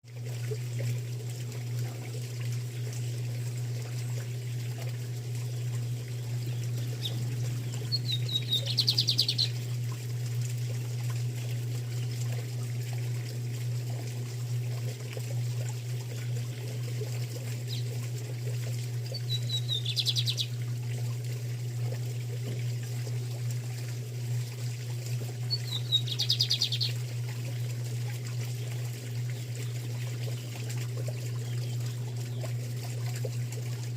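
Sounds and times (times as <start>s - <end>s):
steady low hum: 0.1s - 33.9s
bird song with high trill: 6.8s - 9.6s, 19.2s - 20.6s, 25.5s - 27.0s.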